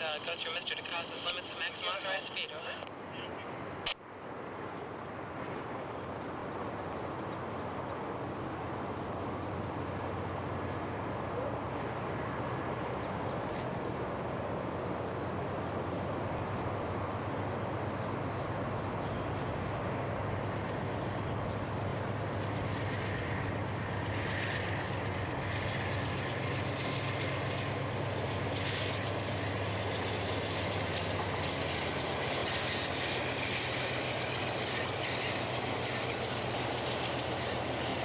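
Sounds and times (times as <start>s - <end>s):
diesel locomotive engine humming: 0.0s - 38.0s
train wheels clicking on track: 22.0s - 38.0s.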